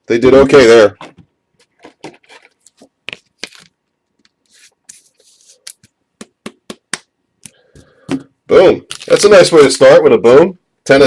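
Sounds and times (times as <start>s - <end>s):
trading cards clicking and rustling: 1.7s - 7.6s.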